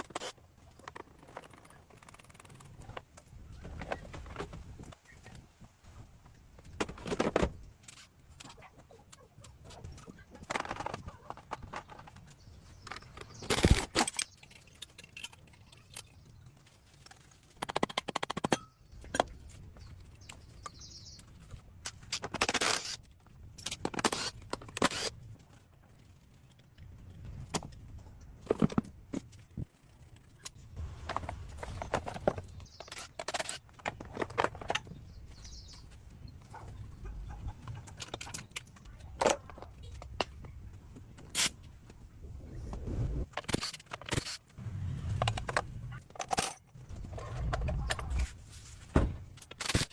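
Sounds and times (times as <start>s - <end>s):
metal parts clinking and knocking: 7.8s - 35.9s, 37.2s - 40.5s, 43.3s - 48.4s.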